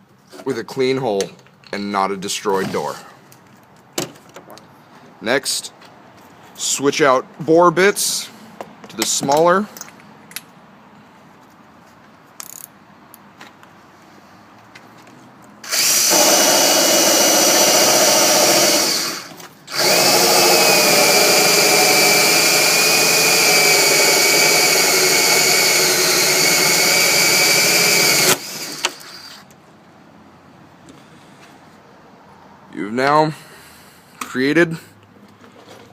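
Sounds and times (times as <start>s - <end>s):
electric drill cutting wood: 15.6s - 29.4s.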